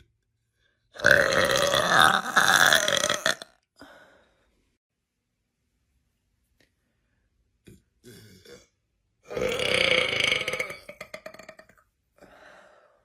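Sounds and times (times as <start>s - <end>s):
woman burping: 1.0s - 3.5s, 9.3s - 11.8s.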